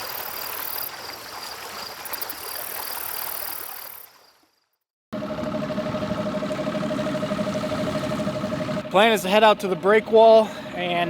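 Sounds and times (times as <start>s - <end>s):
wind and water rushing: 0.0s - 4.4s
motorboat running: 5.1s - 11.0s.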